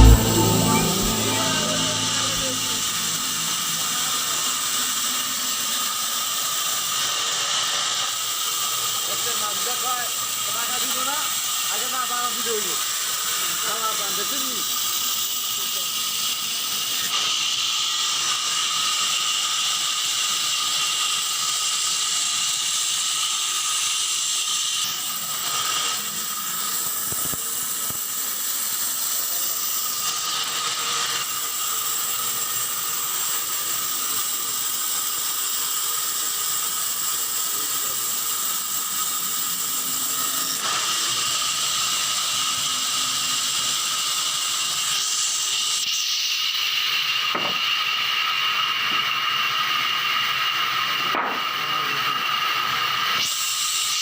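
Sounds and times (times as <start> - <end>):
machinery whining tones: 0.0 - 4.7
sawmill machinery hissing: 0.0 - 54.0.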